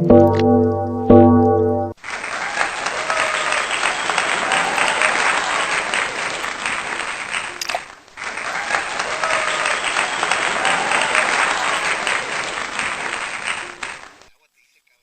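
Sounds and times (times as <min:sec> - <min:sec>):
background music: 0:00.0 - 0:02.0.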